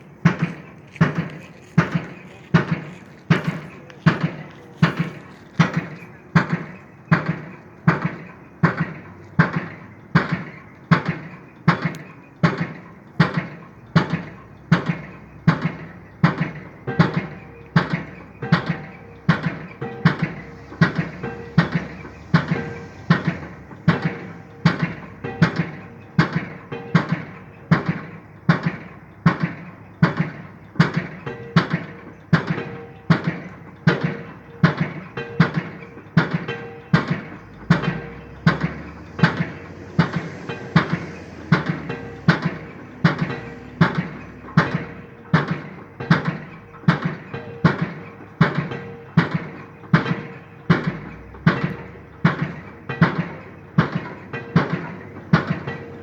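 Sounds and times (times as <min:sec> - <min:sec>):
pile driver hammer striking: 0:00.2 - 0:56.0.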